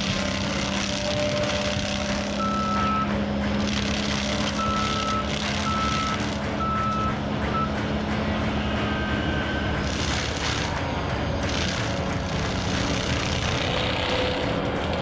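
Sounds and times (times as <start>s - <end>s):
diesel engine droning: 0.0s - 15.0s
backup alarm beeps: 2.4s - 3.2s, 4.6s - 7.9s.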